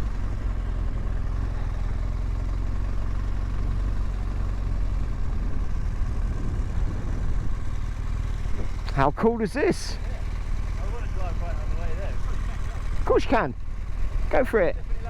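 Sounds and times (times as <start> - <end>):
motorcycle engine running: 0.0 - 15.0
wind rumble on microphone: 4.9 - 9.0.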